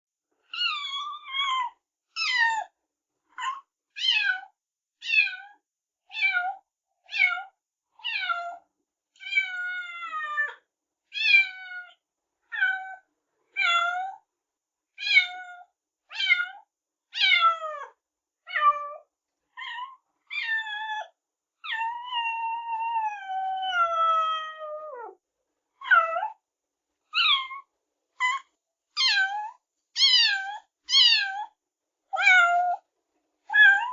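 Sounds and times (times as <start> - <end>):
kitten meowing: 19.6 - 21.0, 27.2 - 27.6, 29.0 - 31.6, 32.2 - 32.8, 33.5 - 33.9.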